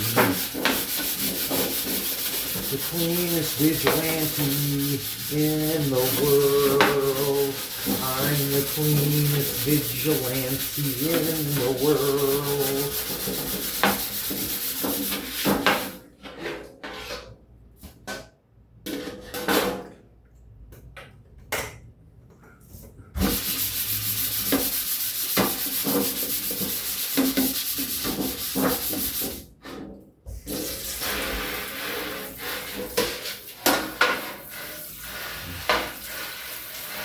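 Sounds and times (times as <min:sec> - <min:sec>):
scrubbing a surface: 0:00.0 - 0:16.0, 0:23.2 - 0:29.4, 0:30.4 - 0:37.0.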